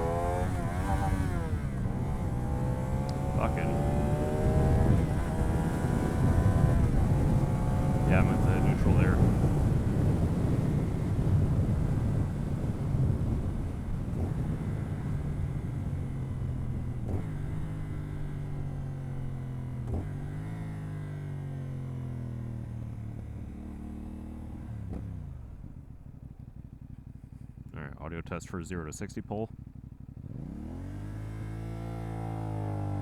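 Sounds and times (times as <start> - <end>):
motorcycle engine: 0.0 - 33.0
wind noise: 4.2 - 15.8.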